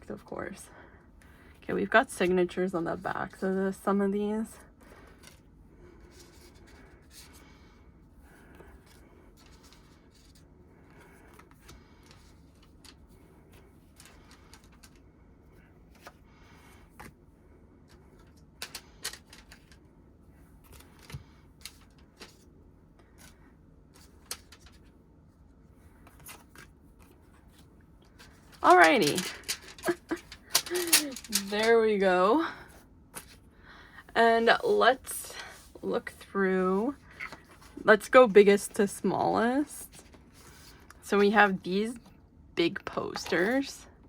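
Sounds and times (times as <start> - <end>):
paper rustling: 20.6 - 25.0, 25.9 - 32.1.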